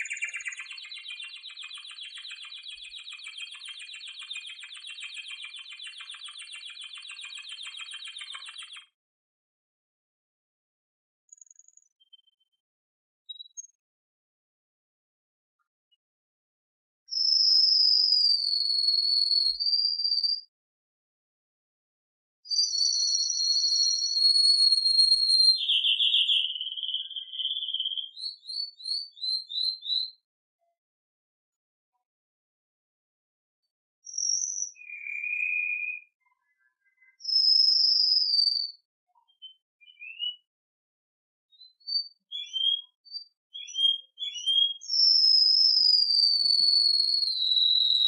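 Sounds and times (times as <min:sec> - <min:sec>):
canary singing: 0:00.0 - 0:08.9, 0:22.5 - 0:30.2, 0:41.6 - 0:48.0.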